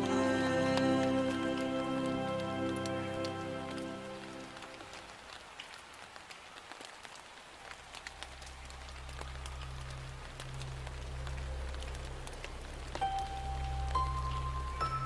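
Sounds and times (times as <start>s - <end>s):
music: 0.0s - 4.8s, 12.9s - 15.0s
rain falling: 0.0s - 15.0s
raindrops ticking: 0.0s - 15.0s
low steady hum: 7.7s - 15.0s.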